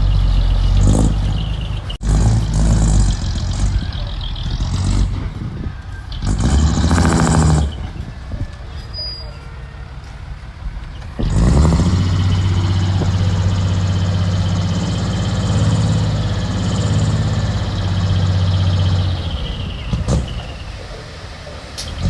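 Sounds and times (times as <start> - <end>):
earthmoving machine diesel engine: 0.0 - 22.0.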